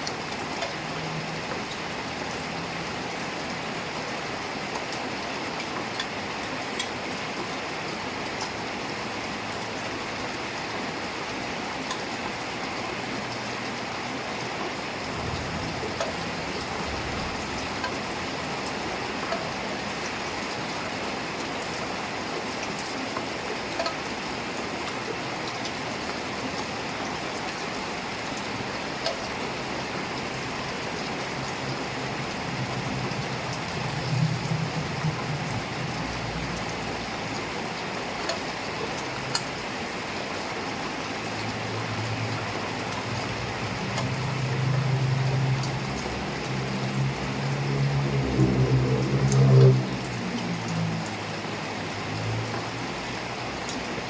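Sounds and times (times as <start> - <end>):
heavy rain falling: 0.0 - 54.0
water drips ticking: 0.0 - 54.0
low hum: 44.9 - 51.0.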